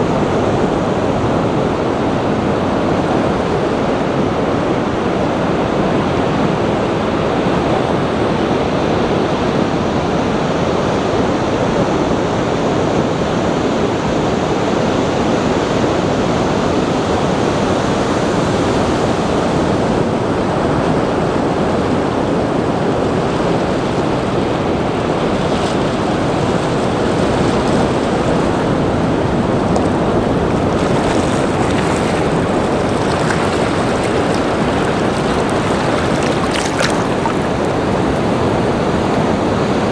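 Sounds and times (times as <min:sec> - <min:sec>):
rushing water roar: 0:14.0 - 0:39.9.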